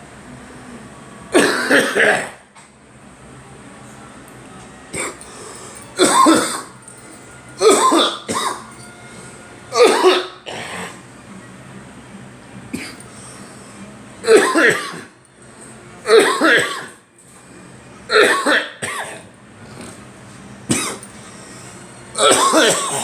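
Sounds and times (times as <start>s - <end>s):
people coughing: 1.3s - 2.5s, 4.9s - 8.9s, 9.7s - 11.0s, 12.7s - 15.2s, 16.0s - 17.0s, 18.1s - 20.1s, 20.7s - 23.0s
throat clearing: 1.4s - 2.4s, 4.9s - 5.4s, 6.0s - 6.8s, 7.6s - 8.7s, 9.8s - 11.0s, 12.7s - 13.4s, 14.2s - 15.1s, 16.1s - 17.0s, 18.1s - 20.0s, 20.7s - 21.1s, 22.2s - 23.0s.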